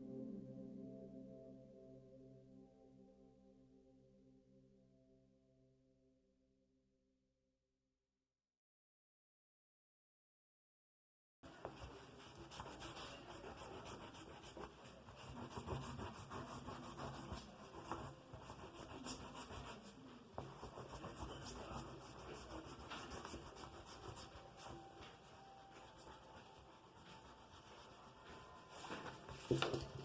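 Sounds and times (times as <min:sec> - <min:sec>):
pencil scratching on paper: 0:11.5 - 0:30.0.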